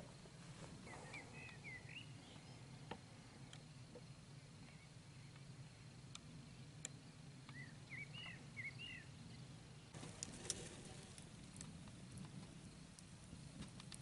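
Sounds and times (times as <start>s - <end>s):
soft rustling hiss: 0.0s - 14.0s
faint bird chirps: 0.8s - 5.8s, 7.4s - 10.0s.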